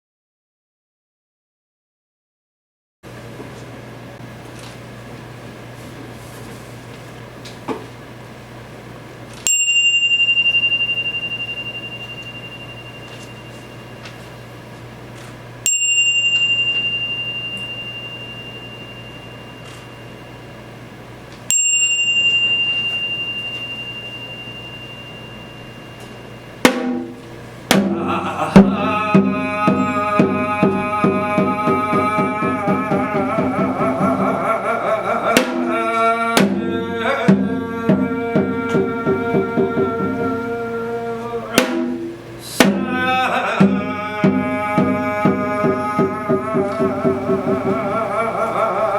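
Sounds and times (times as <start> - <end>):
small high-pitched bell ringing: 9.4 - 14.5, 15.6 - 20.7, 21.5 - 26.6
pitched melody: 22.1 - 48.9
drums in fast driving rhythm: 26.6 - 34.2, 35.4 - 35.8, 36.4 - 40.3, 41.6 - 47.9.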